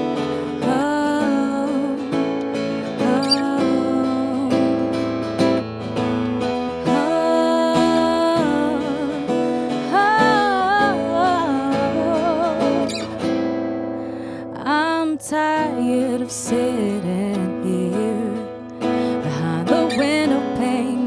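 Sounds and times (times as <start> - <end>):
acoustic guitar strumming: 0.0 - 21.0
sliding wavering melody line: 3.1 - 3.6.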